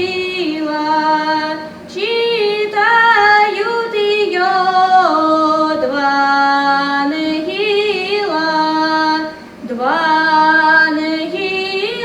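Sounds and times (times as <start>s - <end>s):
woman singing unaccompanied: 0.0s - 12.0s.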